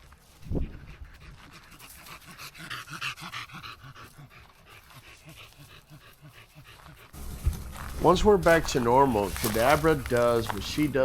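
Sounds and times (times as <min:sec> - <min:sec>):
dog panting: 0:00.4 - 0:10.5
dull thump: 0:07.2 - 0:08.8.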